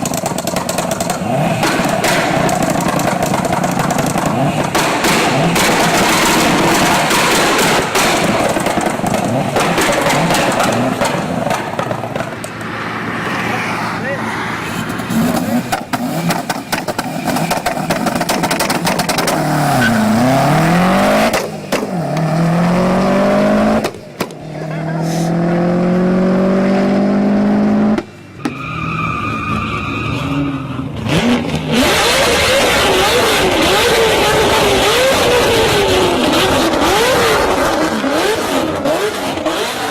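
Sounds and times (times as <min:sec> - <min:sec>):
exhaust pops and crackles: 0:00.0 - 0:12.7, 0:15.2 - 0:20.2, 0:21.2 - 0:22.3, 0:23.8 - 0:24.5
loud engine revving: 0:01.0 - 0:28.1, 0:29.5 - 0:39.9.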